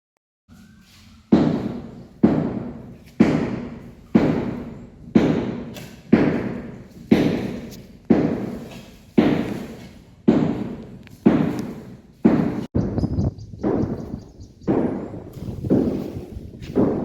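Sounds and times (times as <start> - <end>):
heavy ringing thuds: 13.6 - 17.0.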